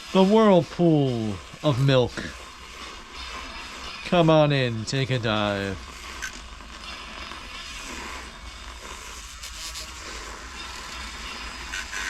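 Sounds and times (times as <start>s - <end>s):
milk frother swishing: 7.0s - 12.0s.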